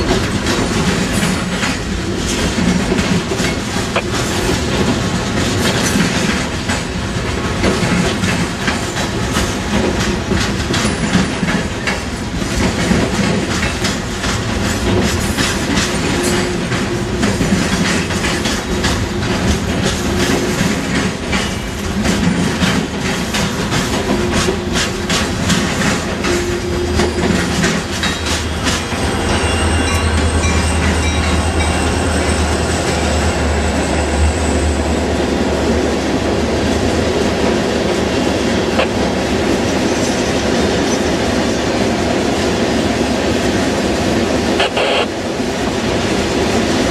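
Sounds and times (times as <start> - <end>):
wheels clicking over rail joints: 0.0 - 33.8
freight train cars rolling: 0.0 - 46.9
train wheel squeal: 10.7 - 12.0, 15.2 - 16.9, 24.1 - 35.1, 39.6 - 41.7.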